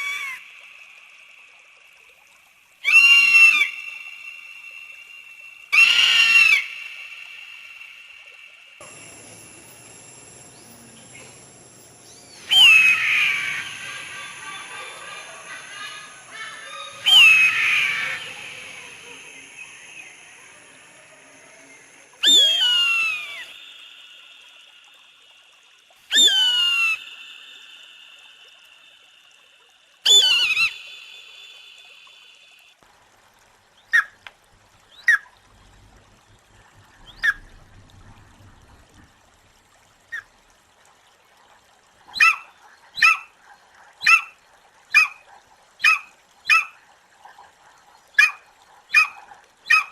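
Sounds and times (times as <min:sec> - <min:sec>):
bird of prey screaming: 0:02.8 - 0:03.8, 0:05.7 - 0:06.8, 0:12.5 - 0:19.2, 0:22.2 - 0:23.6, 0:26.1 - 0:27.0, 0:30.1 - 0:30.8.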